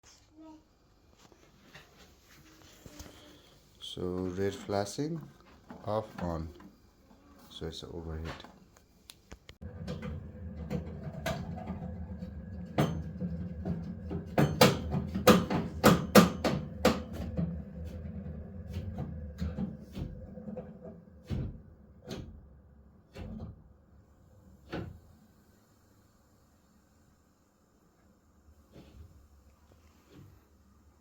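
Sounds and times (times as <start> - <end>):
heating pipes banging: 9.6 - 22.5
circulating pump hum: 9.6 - 26.3.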